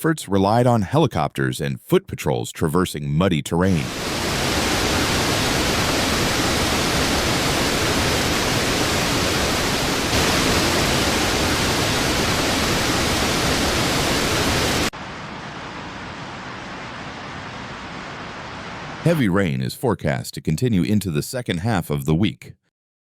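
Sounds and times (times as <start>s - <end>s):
rushing flood water: 3.8s - 19.2s.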